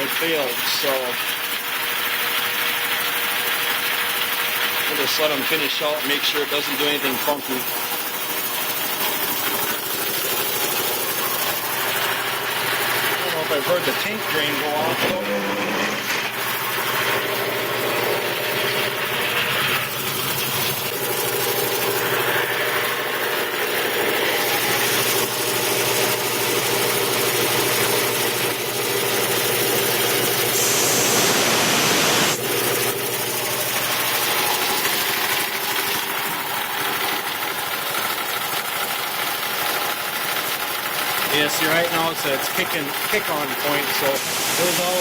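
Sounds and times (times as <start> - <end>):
air compressor running: 0.0 - 45.0
loud hiss of air: 30.6 - 32.4, 44.2 - 45.0.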